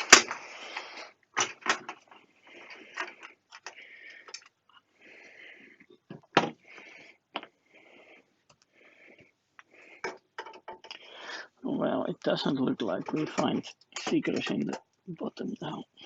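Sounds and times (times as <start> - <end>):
clicks and knocks: 10.0 - 11.0, 12.8 - 14.9.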